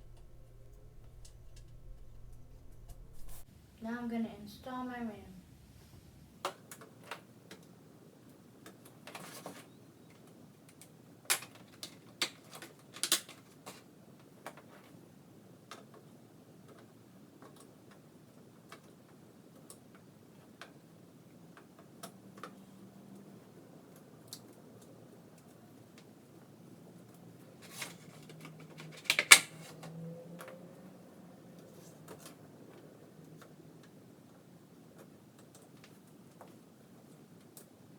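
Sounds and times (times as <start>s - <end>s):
plastic snaps of ram seating: 10.8s - 13.8s, 27.6s - 30.0s
brief rustle: 27.5s - 29.9s
plastic clicks of memory sticks: 27.6s - 29.6s.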